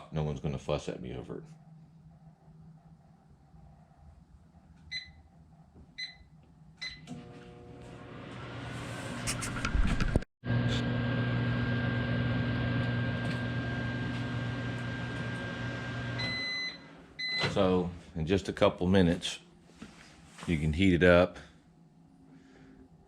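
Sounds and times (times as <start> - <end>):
microwave running hum: 1.7 - 9.2, 10.4 - 17.9
microwave keypad beeping: 4.9 - 5.2, 16.1 - 17.5.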